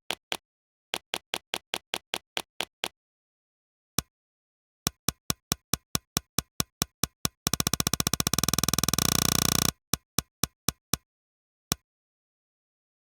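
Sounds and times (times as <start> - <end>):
mechanical keyboard clicks: 5.1 - 11.0.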